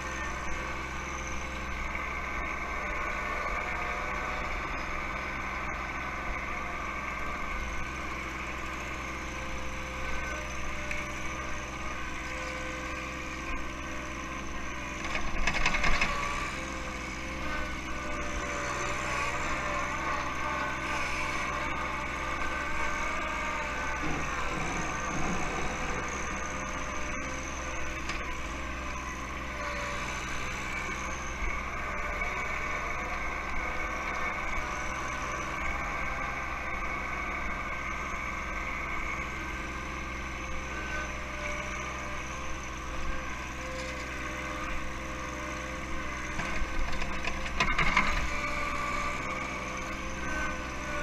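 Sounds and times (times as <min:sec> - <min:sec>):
tractor diesel engine running: 0:00.0 - 0:51.0.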